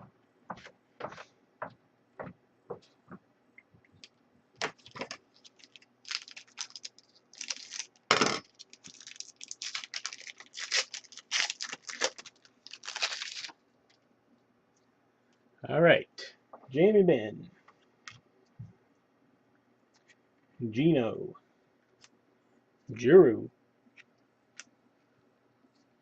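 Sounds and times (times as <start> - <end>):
card pack wrapper tearing: 4.6 - 13.6.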